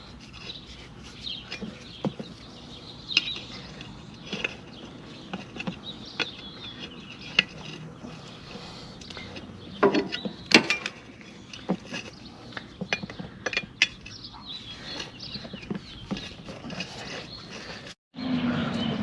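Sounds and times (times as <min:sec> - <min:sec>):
screwdrivers clicking and scraping: 0:00.0 - 0:18.0.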